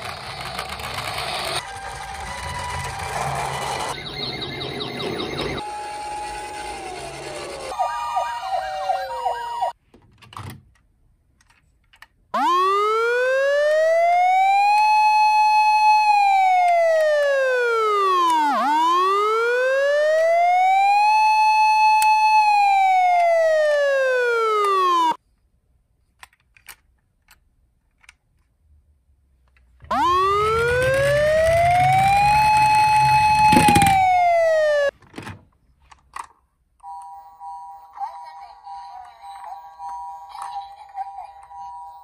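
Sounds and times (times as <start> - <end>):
police siren wailing: 1.6 - 9.8, 12.4 - 25.2, 29.9 - 34.9
jumbled sounds with falling glides: 29.9 - 34.9.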